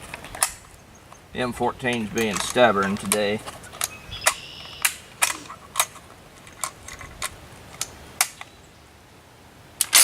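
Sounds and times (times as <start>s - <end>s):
rifle metallic clicks: 9.8s - 10.0s.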